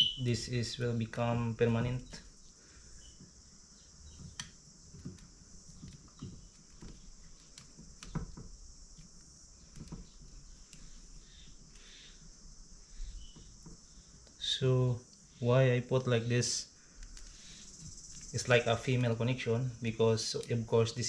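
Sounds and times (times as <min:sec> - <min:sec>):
insects droning: 0:00.0 - 0:21.0
small parts clicking: 0:17.0 - 0:19.4.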